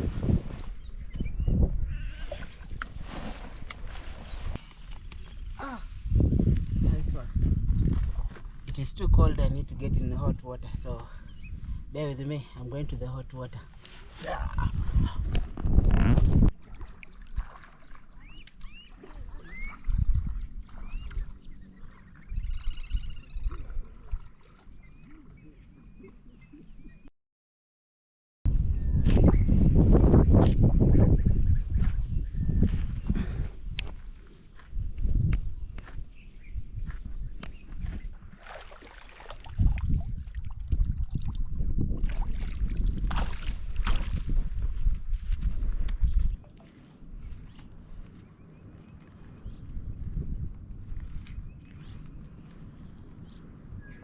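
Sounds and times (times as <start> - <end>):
high insect drone: 0.2 - 27.0
water splashing and sloshing: 2.2 - 5.5, 16.4 - 22.8, 37.8 - 45.5
wild birds chirping: 11.2 - 12.1, 16.7 - 27.1.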